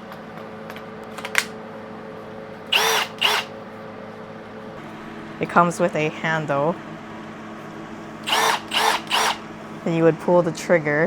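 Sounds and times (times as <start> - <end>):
drill motor whirring: 2.7 - 3.5, 8.2 - 9.5.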